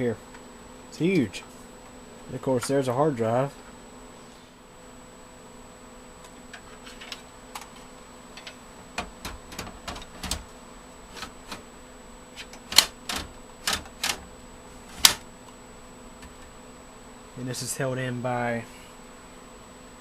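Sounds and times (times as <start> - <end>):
clicks and knocks of metal drive cage: 8.4 - 10.5.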